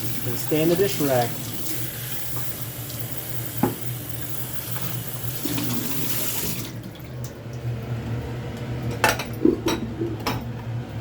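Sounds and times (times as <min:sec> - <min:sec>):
water running from tap: 0:00.0 - 0:07.4.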